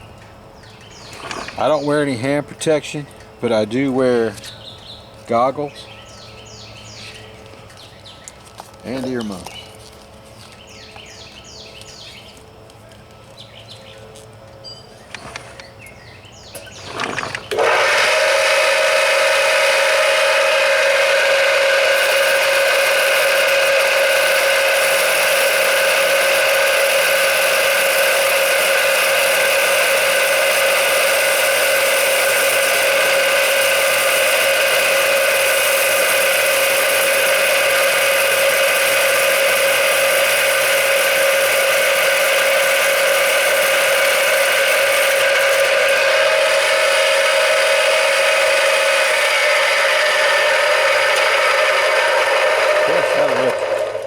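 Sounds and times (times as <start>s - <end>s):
wet saw whining: 1.0s - 2.2s, 16.5s - 54.0s.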